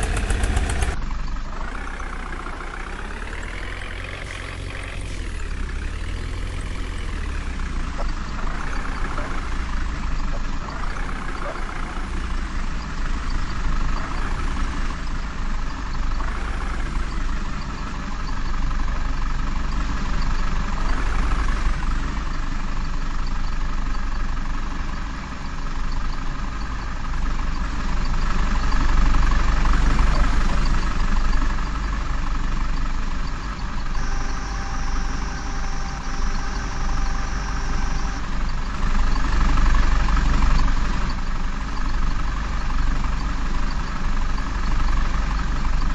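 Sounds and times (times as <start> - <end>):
heavy diesel engine running: 0.0 - 45.9
steady high tone: 33.9 - 38.6.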